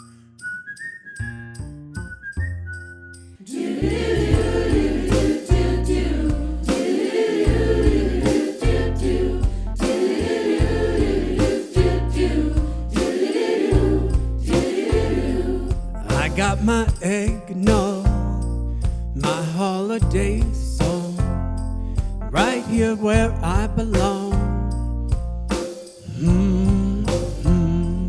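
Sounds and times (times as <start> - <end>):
upbeat christmas song: 3.2 - 28.0
choir voices: 3.4 - 16.5
pulsing bass line: 3.8 - 6.8, 7.4 - 13.0, 13.7 - 17.0, 17.7 - 19.3, 20.0 - 25.6, 26.2 - 28.0
drum hits: 4.2 - 19.4, 23.2 - 24.6, 25.2 - 27.9.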